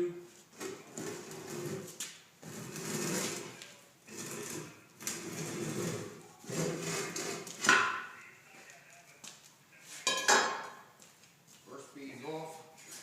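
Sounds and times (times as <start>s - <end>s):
tire rubbing against wheel rim: 0.6s - 7.6s.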